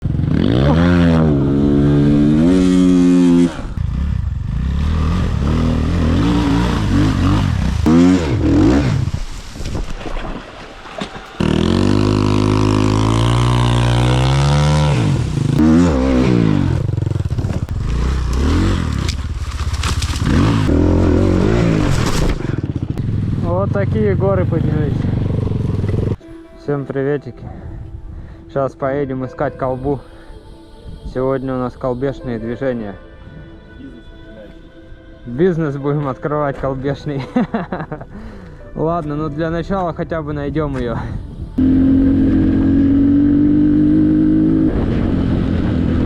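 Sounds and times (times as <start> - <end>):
motorcycle engines revving: 0.0 - 9.2, 11.1 - 26.2, 41.6 - 46.0.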